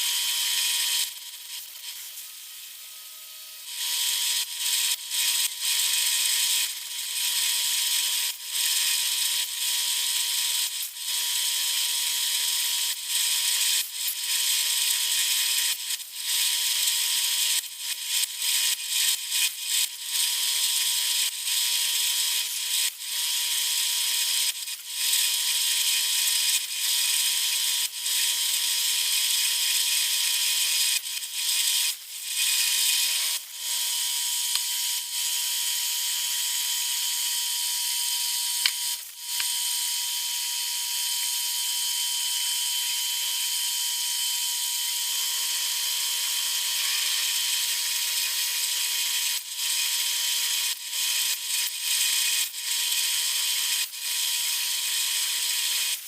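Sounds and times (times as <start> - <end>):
milling machine cutting metal: 12.2 - 43.0.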